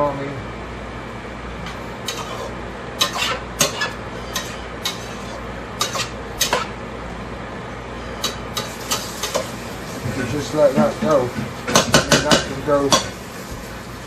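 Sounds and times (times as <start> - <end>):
utensil scraping a pan: 2.1 - 6.7.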